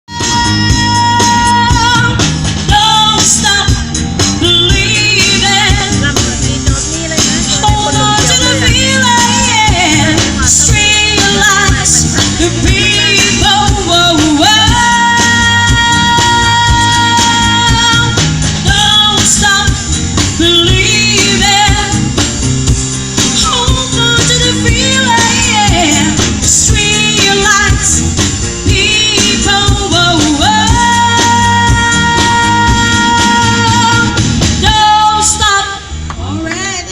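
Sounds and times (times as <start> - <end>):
music with steady beat: 0.1 - 36.9
person singing: 4.4 - 22.1, 28.6 - 36.9.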